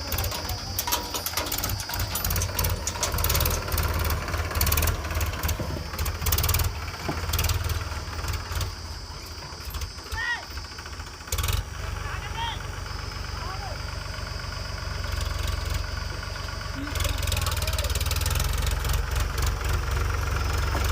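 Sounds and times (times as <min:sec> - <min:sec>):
metallic rattles and clicks: 0:00.0 - 0:10.0
diesel engine rumbling: 0:00.0 - 0:20.9.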